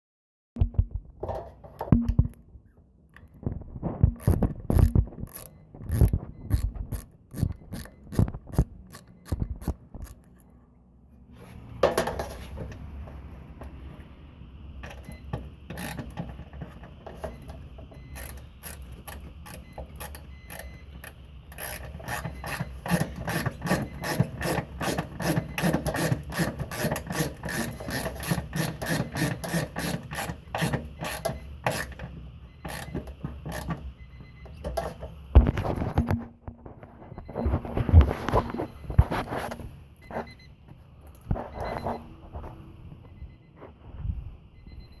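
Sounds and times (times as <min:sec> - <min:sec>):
engine cranking without starting: 0:14.9 - 0:33.9.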